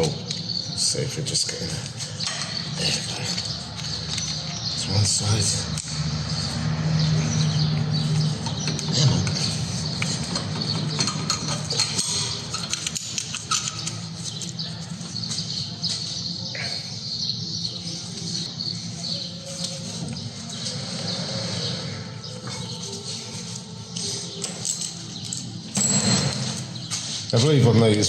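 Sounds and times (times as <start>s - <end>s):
metal tools clicking and scraping: 1.7s - 6.6s, 7.4s - 14.8s, 22.5s - 27.4s.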